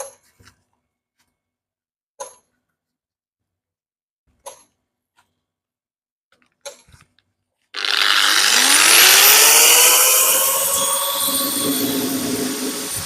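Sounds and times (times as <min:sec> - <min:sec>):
power drill motor whine: 0:07.8 - 0:13.0.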